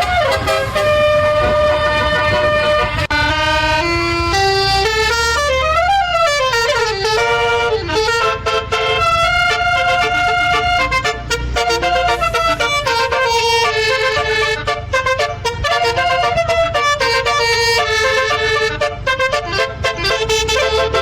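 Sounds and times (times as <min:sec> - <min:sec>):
steady low rumble: 0:00.0 - 0:04.9, 0:09.0 - 0:17.4
multi-tone air horn melody: 0:00.0 - 0:21.0.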